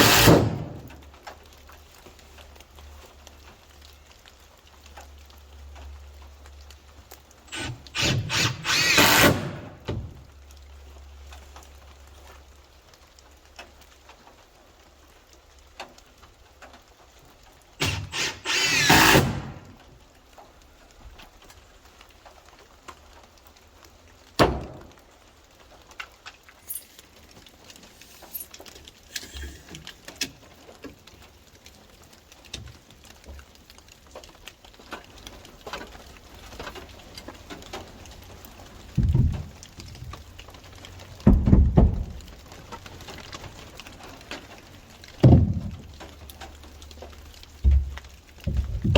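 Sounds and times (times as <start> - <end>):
power drill whining: 7.5 - 9.7, 17.8 - 19.7.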